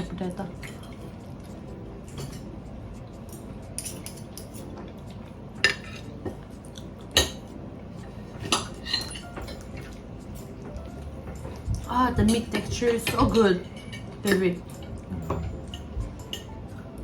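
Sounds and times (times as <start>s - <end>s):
cutlery clinking on plates: 2.1s - 2.6s, 3.3s - 4.9s, 5.6s - 6.4s, 8.4s - 16.7s.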